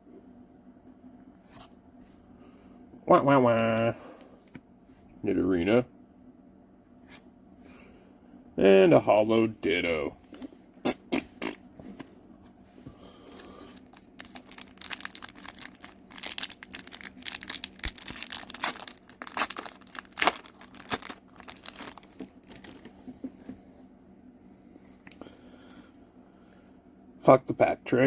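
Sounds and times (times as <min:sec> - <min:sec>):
foil wrapper tearing and crinkling: 0:13.8 - 0:22.9.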